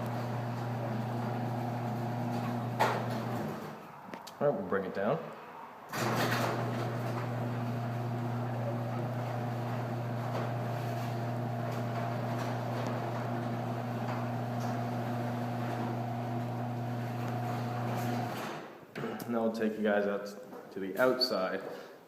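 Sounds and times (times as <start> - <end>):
garage door opener motor humming: 0.0 - 3.8, 6.0 - 18.6.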